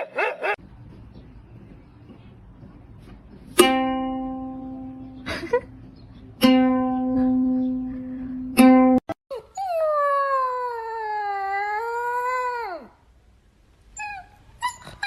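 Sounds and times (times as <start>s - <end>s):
plucked string instrument notes: 3.5s - 9.1s.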